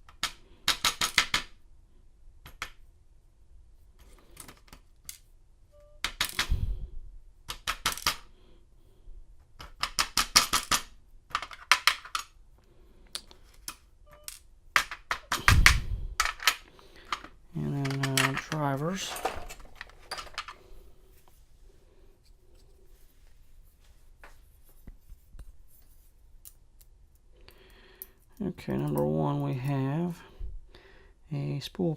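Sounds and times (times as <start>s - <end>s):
lock pins clicking and rattling: 6.0s - 6.6s, 7.5s - 8.3s, 9.6s - 12.4s, 13.2s - 20.6s.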